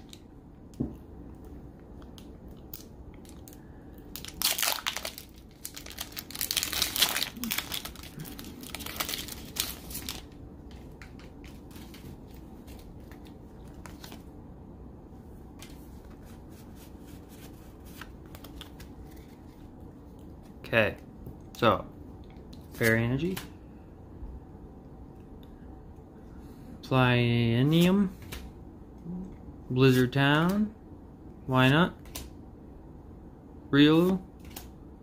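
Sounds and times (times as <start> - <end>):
foil wrapper crinkling and tearing: 2.7 - 10.4.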